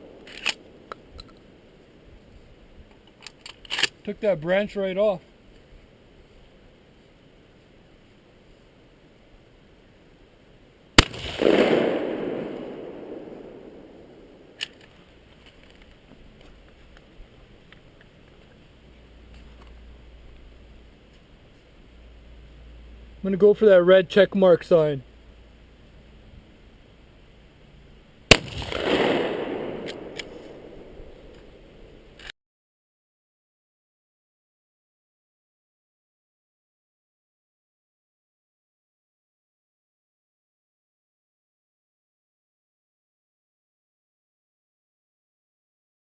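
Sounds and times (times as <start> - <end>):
shotgun shot with echo: 11.0 - 14.6, 28.3 - 31.6
sharp click: 29.8 - 30.5.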